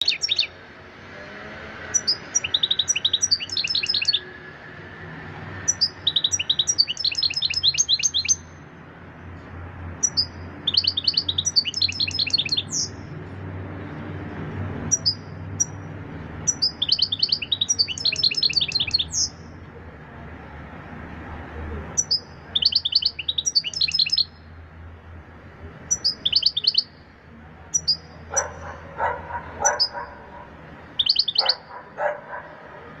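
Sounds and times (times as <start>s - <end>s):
finch singing: 0.0s - 0.6s, 1.9s - 4.3s, 5.6s - 8.5s, 10.0s - 13.0s, 14.9s - 15.8s, 16.4s - 19.4s, 22.0s - 24.4s, 25.8s - 27.0s, 27.7s - 32.6s.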